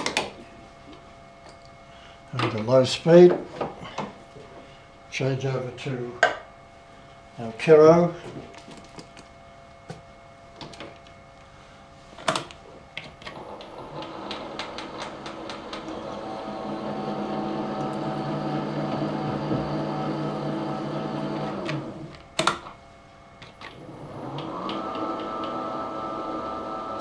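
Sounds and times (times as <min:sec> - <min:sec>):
machine spindle motor humming: 0:13.3 - 0:22.2, 0:23.6 - 0:27.0.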